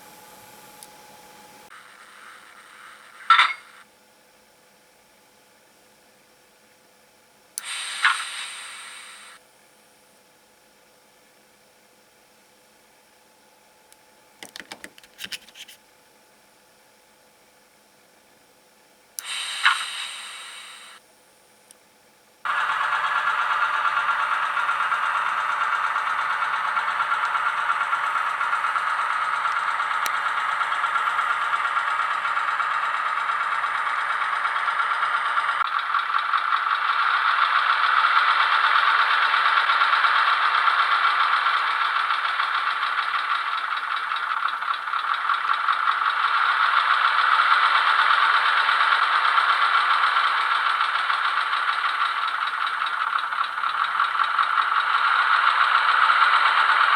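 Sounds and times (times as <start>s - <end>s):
model diesel engine sound from loudspeaker: 19.2s - 21.0s, 22.5s - 56.9s.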